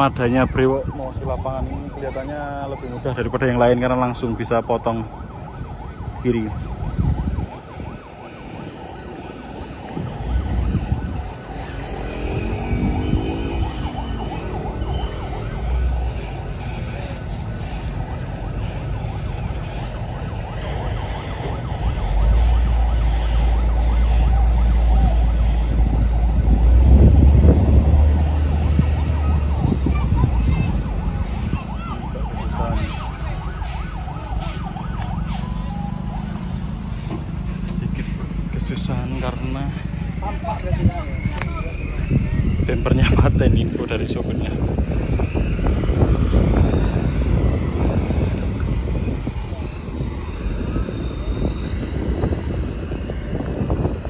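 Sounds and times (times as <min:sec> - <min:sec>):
warbling siren-like tone: 0:00.0 - 0:54.0
heavy truck engine rumbling: 0:02.6 - 0:54.0.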